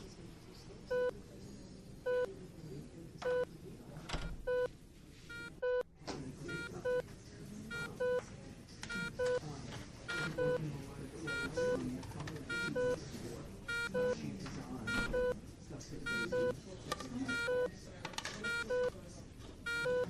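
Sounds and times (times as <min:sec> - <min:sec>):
electronic beeps: 0:14.9 - 0:15.4.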